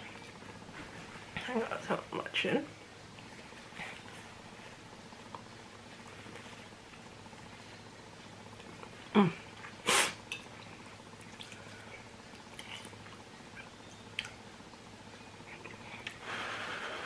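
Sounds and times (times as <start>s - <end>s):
mouth clicks and eating smacks: 11.2s - 14.4s.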